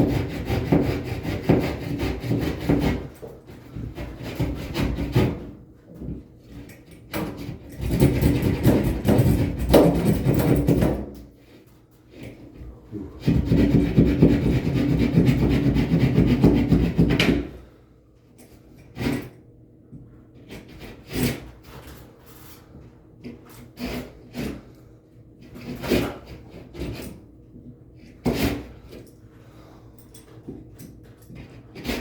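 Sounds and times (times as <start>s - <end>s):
loud rasping scrape: 0.0s - 5.5s, 12.9s - 17.2s, 20.4s - 22.6s, 23.2s - 27.2s, 31.4s - 32.0s.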